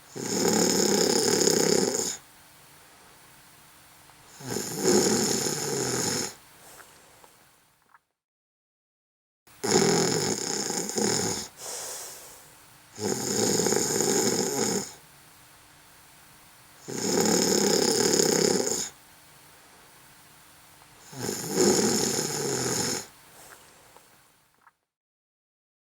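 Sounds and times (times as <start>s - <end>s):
quiet breathing: 0.0s - 7.7s, 10.6s - 24.5s
person snoring: 0.1s - 2.2s, 4.3s - 6.4s, 9.6s - 12.4s, 13.0s - 15.0s, 16.8s - 19.0s, 21.0s - 23.1s.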